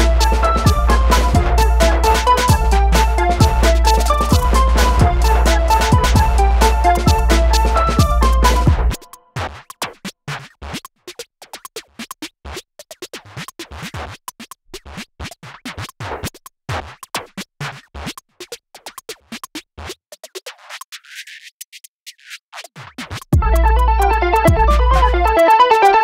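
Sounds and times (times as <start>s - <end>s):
electronic music with held tones: 0.0s - 9.3s, 23.4s - 26.0s
scratch-like percussive hits: 0.0s - 23.6s.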